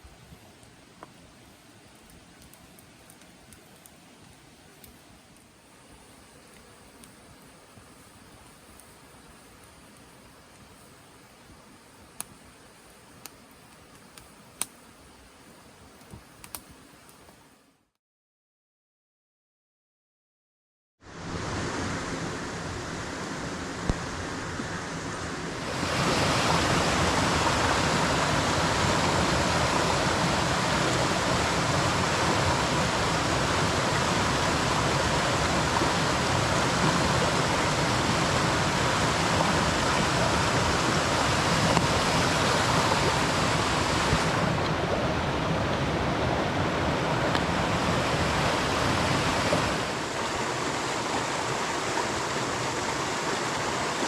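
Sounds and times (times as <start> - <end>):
mountain stream rushing: 21.1 - 54.0.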